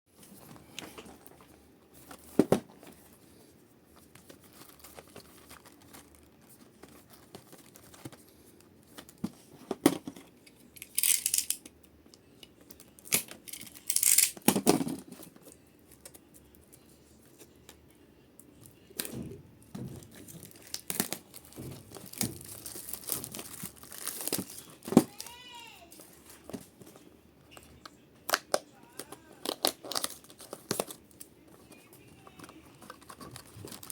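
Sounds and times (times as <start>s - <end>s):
plastic and foil crinkling and tearing: 0.2s - 9.5s, 20.0s - 33.9s.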